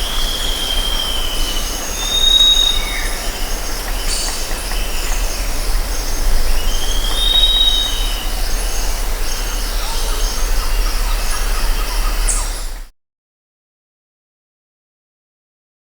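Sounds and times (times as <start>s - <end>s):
insects trilling: 0.0s - 12.8s
background hiss: 0.0s - 12.9s
whistled bird call: 0.0s - 12.9s.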